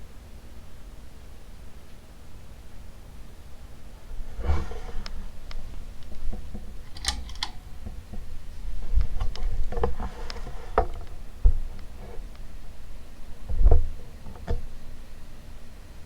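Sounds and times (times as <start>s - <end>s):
ceiling fan humming: 0.0s - 16.0s
sharp clicks and knocks: 4.9s - 12.5s, 13.4s - 14.8s
low thuds: 7.7s - 14.8s.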